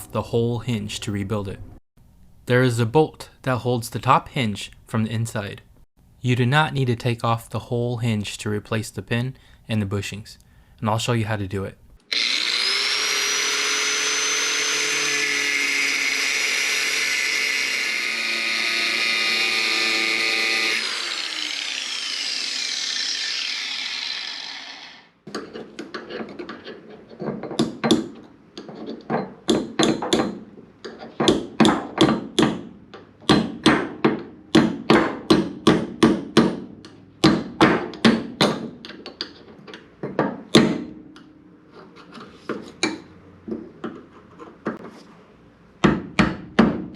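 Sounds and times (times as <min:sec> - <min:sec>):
power tool whining: 0:12.1 - 0:25.2.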